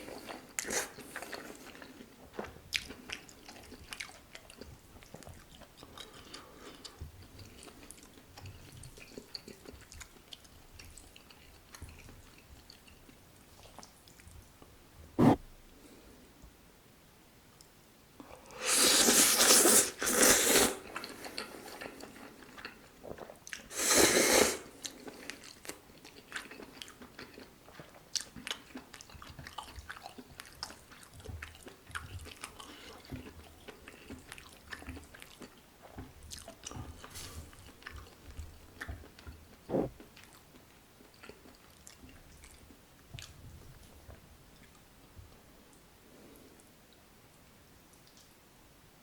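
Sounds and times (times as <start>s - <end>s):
wet chewing clicks: 0.3s - 14.4s, 24.8s - 44.0s.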